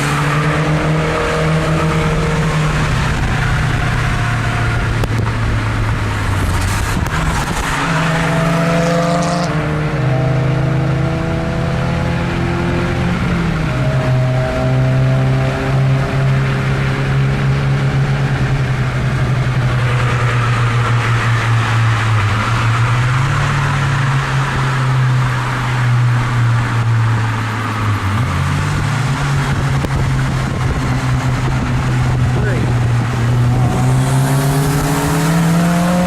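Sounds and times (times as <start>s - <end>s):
car engine running: 16.0s - 36.0s.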